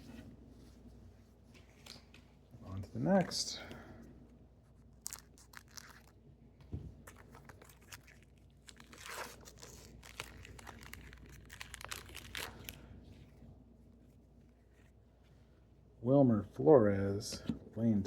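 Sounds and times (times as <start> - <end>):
wrapper tearing and crinkling: 5.0 - 6.2, 7.1 - 12.9.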